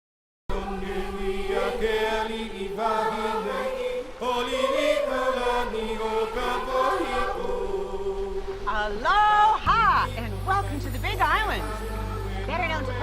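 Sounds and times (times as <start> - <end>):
voices chanting long notes: 0.5 - 13.0.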